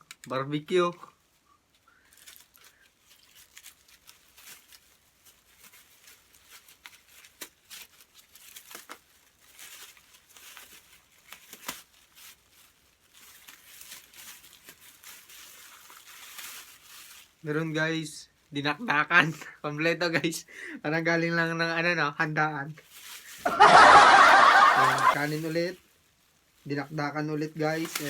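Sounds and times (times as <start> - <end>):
plastic bags crinkling: 1.2 - 17.7, 22.8 - 28.0.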